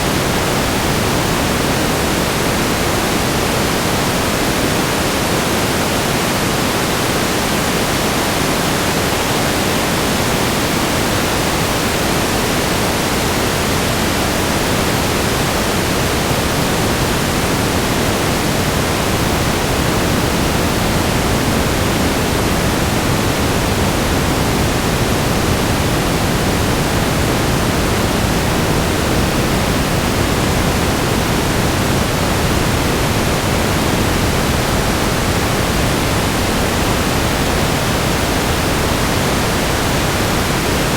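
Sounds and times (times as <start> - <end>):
static hiss: 0.0 - 40.9.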